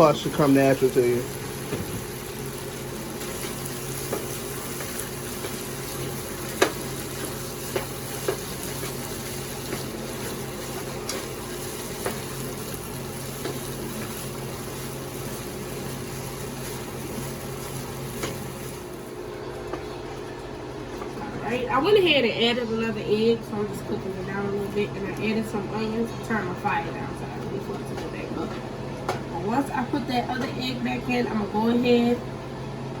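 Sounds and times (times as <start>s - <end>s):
food sizzling in a pan: 0.0s - 19.2s.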